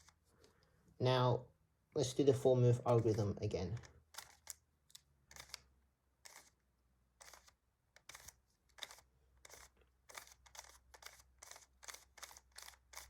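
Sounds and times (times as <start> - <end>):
puzzle cube turning clicks: 2.9 - 6.6, 7.2 - 13.0.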